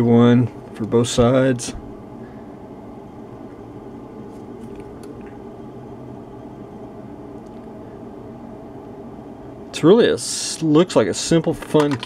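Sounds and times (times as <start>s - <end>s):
low room hum: 0.0s - 12.0s.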